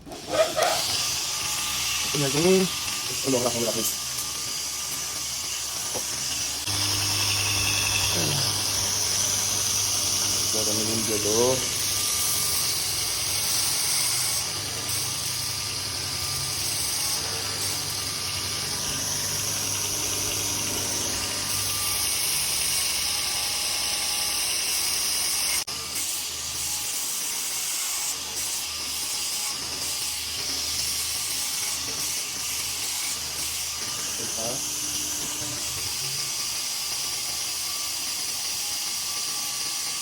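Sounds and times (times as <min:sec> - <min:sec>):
belt grinder grinding: 0:00.0 - 0:40.0.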